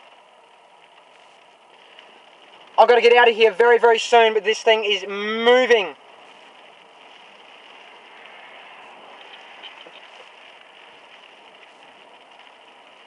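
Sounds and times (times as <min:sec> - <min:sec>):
raindrops ticking: 0:00.0 - 0:13.0
steady rain: 0:00.0 - 0:13.0.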